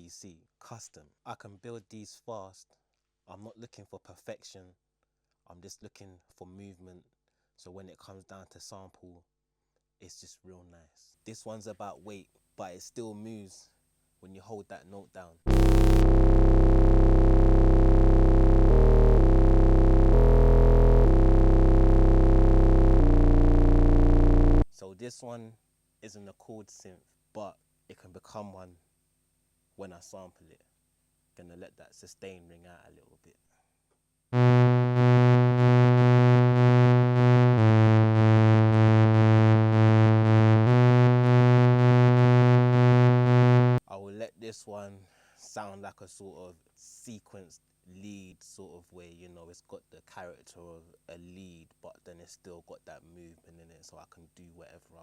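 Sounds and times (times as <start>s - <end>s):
deep synthesizer bass notes: 15.5s - 24.7s, 34.4s - 43.8s.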